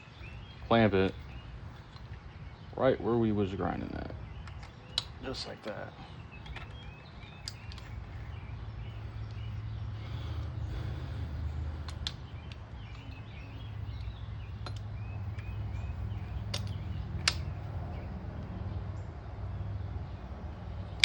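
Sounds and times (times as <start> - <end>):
steady low hum: 0.0 - 21.0
tools clicking and knocking: 16.5 - 17.5.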